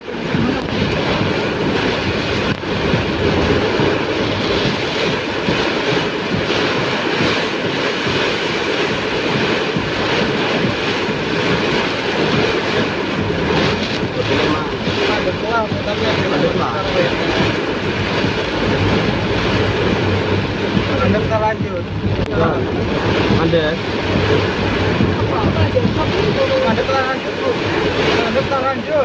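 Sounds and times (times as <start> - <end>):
heavy rain in strong wind: 0.0 - 29.0.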